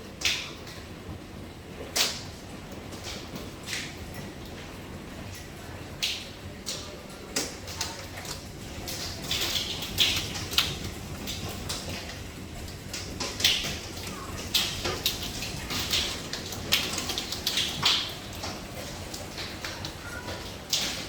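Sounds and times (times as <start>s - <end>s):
hailstones striking hard surfaces: 7.8s - 21.0s
hiss of falling hail: 7.8s - 21.0s.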